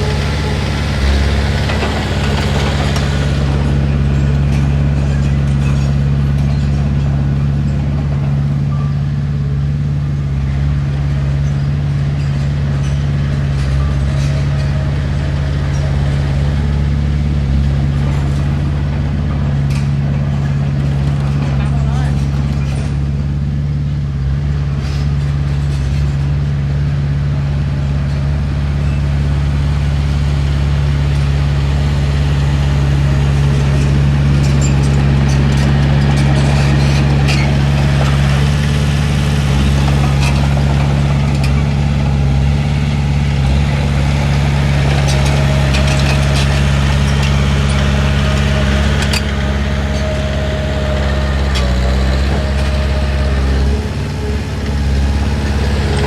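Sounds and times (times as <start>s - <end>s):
bulldozer diesel engine running: 0.0s - 56.0s
metallic clanks and knocks: 33.3s - 42.4s, 43.4s - 56.0s.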